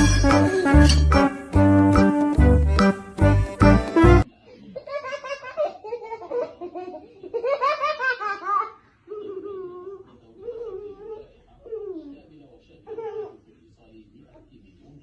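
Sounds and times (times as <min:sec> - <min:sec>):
background music: 0:00.0 - 0:04.3.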